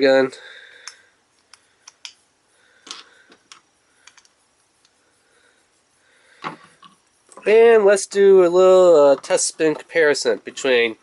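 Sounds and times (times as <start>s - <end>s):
plastic parts clicking and tapping: 2.8s - 4.4s.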